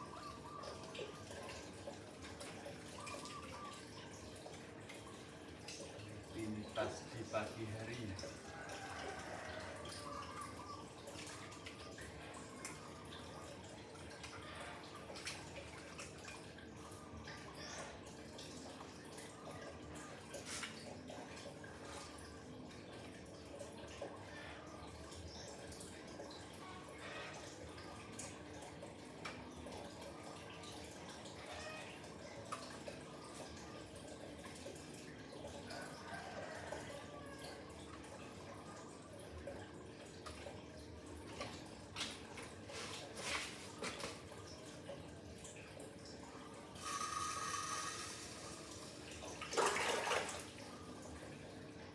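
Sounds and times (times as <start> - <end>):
water dripping: 0.0 - 51.9
running water hiss: 46.7 - 49.1.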